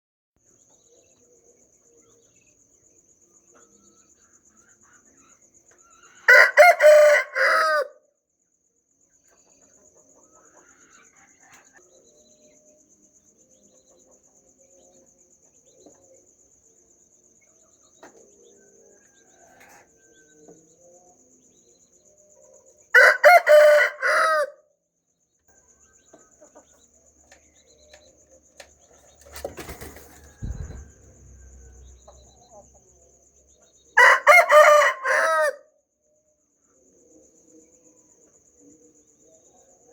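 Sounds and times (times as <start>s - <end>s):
rooster crowing: 6.0s - 8.0s, 22.9s - 24.6s, 29.6s - 32.6s, 34.0s - 35.7s
dull low knock: 30.4s - 32.4s.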